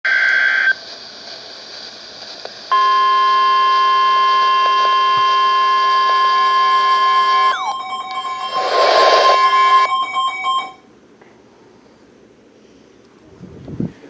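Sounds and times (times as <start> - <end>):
radio hiss: 0.1 - 10.7
buzzy data tone: 2.7 - 10.8
weather radio alarm tone: 2.7 - 10.9.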